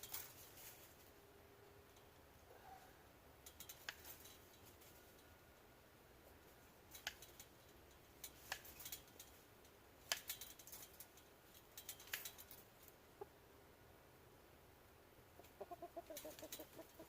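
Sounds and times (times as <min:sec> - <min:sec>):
sharp clicks and snips: 0:03.4 - 0:04.8, 0:06.9 - 0:09.4, 0:10.0 - 0:13.0.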